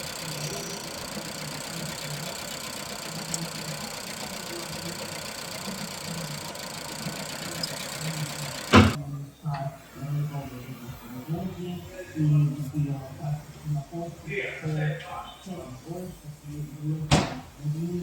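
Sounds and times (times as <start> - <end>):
car engine idling roughly: 0.0 - 9.0.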